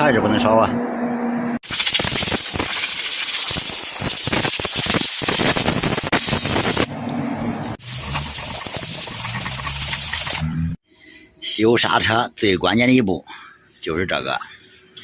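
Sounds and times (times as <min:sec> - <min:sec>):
spray hissing: 0:01.6 - 0:06.9, 0:07.8 - 0:10.4.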